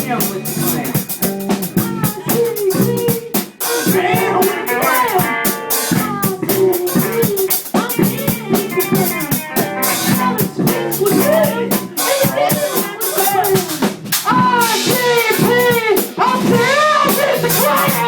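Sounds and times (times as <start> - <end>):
guitar line: 0.0 - 13.7
drum kit playing busy beat: 0.0 - 18.0.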